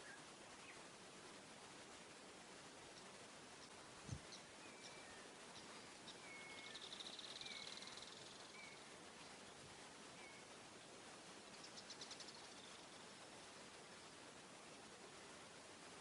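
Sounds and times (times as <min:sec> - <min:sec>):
steady hiss: 0:00.0 - 0:16.0
birds chirping and whistling: 0:04.1 - 0:08.9.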